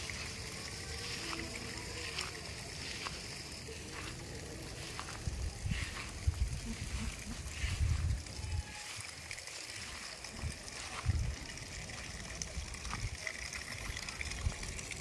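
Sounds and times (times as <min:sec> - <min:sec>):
running water hiss: 0:00.0 - 0:15.0.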